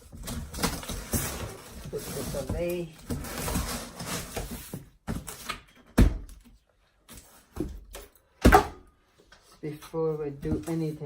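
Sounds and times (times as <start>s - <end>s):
rustling: 0.0s - 5.6s.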